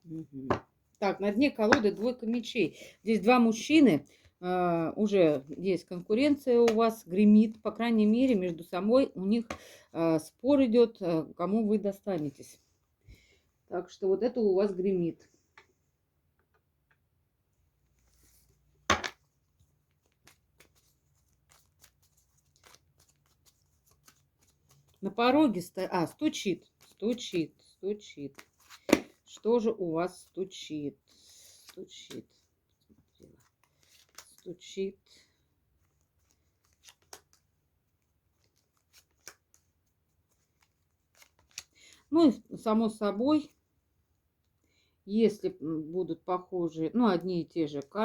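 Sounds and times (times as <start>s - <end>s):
cards rustling and tapping: 1.5s - 2.5s, 5.1s - 8.7s, 18.0s - 27.5s, 28.3s - 30.5s, 31.1s - 34.7s, 35.7s - 42.0s.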